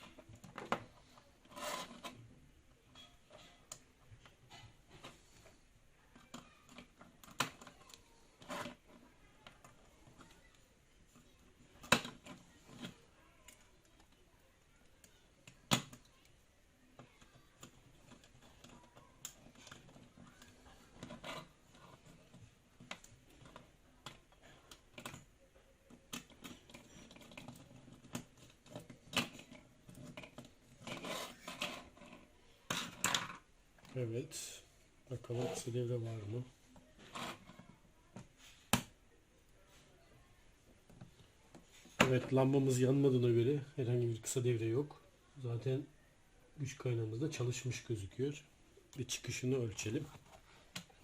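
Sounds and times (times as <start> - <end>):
small clicks and taps on wires: 17.0 - 30.7.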